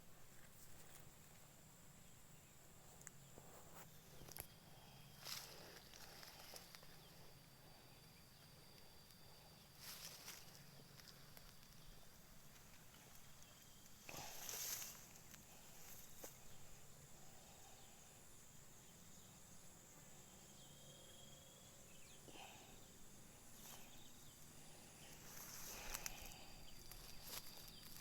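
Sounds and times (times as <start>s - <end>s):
insects high tone: 1.8s - 28.0s.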